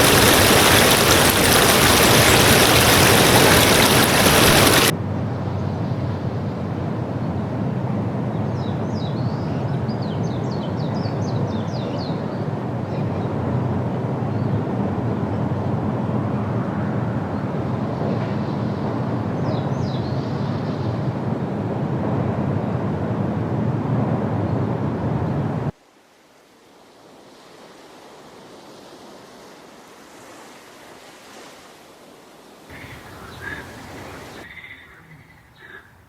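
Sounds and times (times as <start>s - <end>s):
loud rush of water: 0.0s - 4.9s, 32.7s - 35.8s
high bird chirps: 32.7s - 36.0s
outdoor hush: 32.7s - 36.0s.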